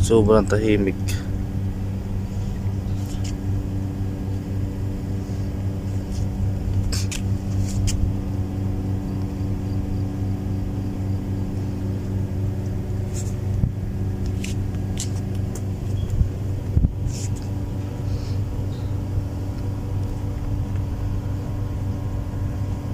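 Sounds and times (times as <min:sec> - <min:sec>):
low machine hum: 0:00.0 - 0:22.9.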